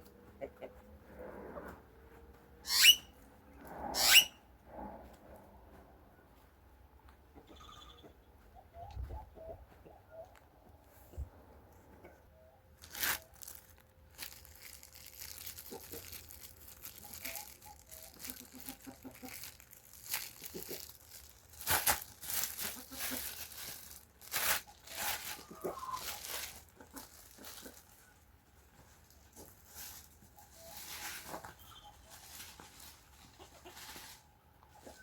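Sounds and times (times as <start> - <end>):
crinkling and rustling: 12.7 - 35.0.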